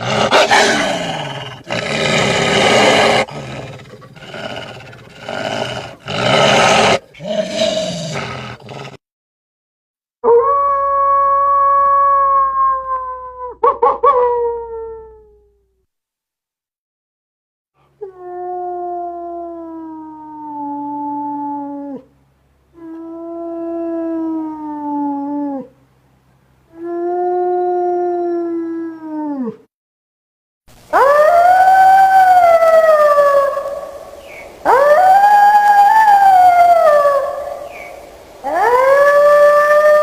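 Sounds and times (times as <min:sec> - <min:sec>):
wolves howling: 0:00.0 - 0:08.4, 0:30.9 - 0:40.0.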